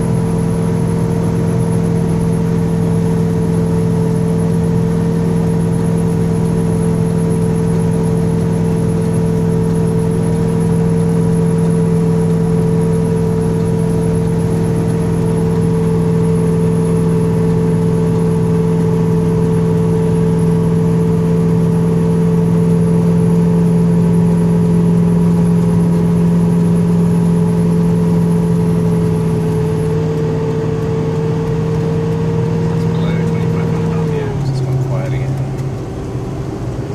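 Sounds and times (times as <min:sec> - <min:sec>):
low hum: 0:22.6 - 0:36.9
mid-pitched drone: 0:22.8 - 0:36.9
fan whirring: 0:29.2 - 0:36.9
road noise: 0:29.4 - 0:36.9.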